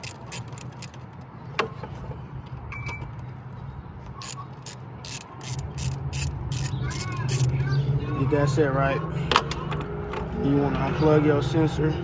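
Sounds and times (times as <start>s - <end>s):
socket ratchet clicking: 0.0s - 1.0s, 4.2s - 7.5s.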